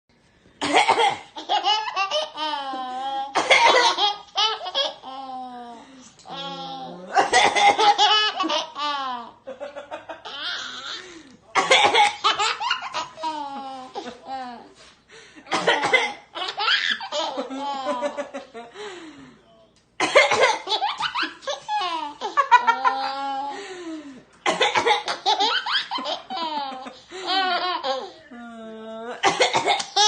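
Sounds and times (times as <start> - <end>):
fake cough: 0.6 - 1.3, 3.4 - 4.0, 11.6 - 12.2, 15.5 - 16.3, 20.0 - 20.7, 24.4 - 25.2, 29.2 - 30.0
child laughing hysterically: 20.7 - 23.5, 25.2 - 28.1.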